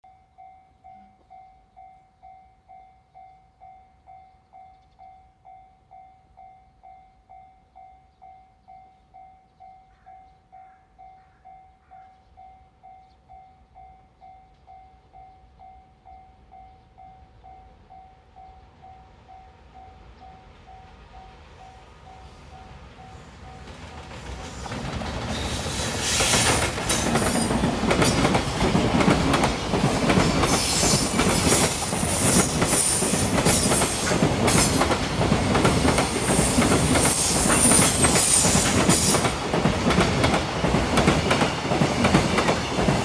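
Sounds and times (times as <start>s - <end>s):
level crossing warning bell: 0.0s - 24.0s
train rumble: 14.5s - 43.0s.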